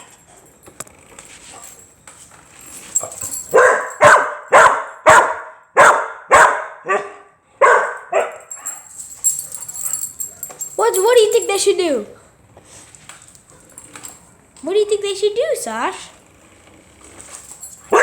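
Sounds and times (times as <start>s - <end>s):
dog barking: 3.5s - 10.6s.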